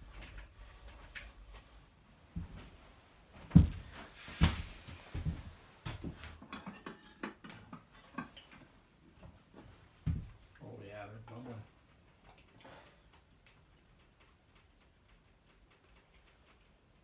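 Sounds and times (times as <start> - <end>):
cookware knocking and clattering: 6.4 - 8.4.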